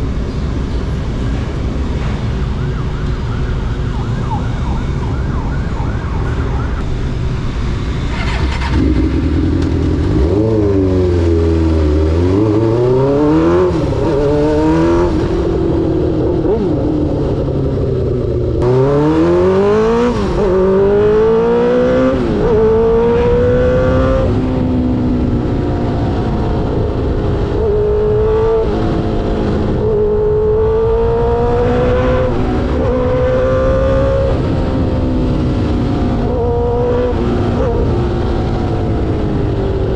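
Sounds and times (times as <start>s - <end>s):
wind noise: 0.0s - 11.6s
motorcycle engine accelerating: 6.8s - 39.9s.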